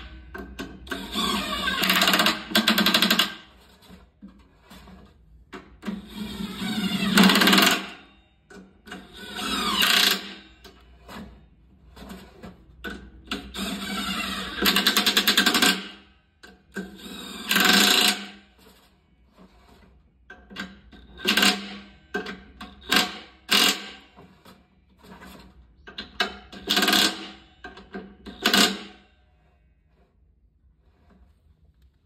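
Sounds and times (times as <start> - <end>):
power screwdriver running: 9.2 - 10.3.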